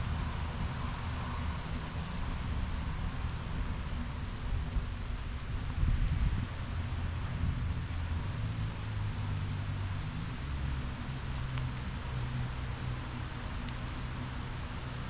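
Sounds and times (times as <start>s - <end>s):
light rain on leaves: 0.0s - 15.0s
steady low rumble: 0.0s - 15.0s
faint ticks of raindrops: 6.4s - 15.0s.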